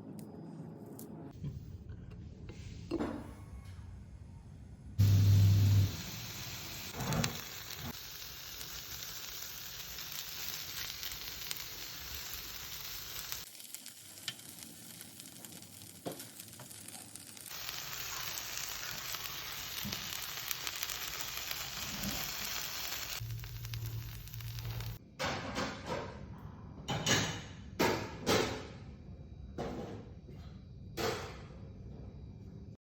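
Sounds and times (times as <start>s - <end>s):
chicken sizzling in a pan: 5.0s - 25.0s.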